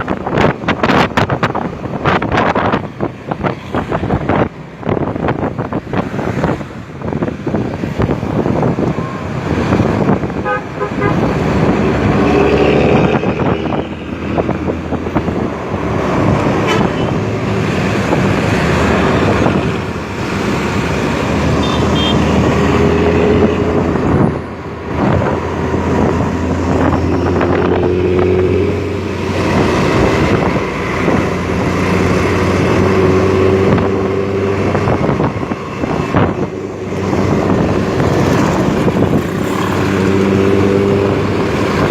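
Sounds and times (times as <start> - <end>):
bus engine growling exhaust: 0.0 - 41.9.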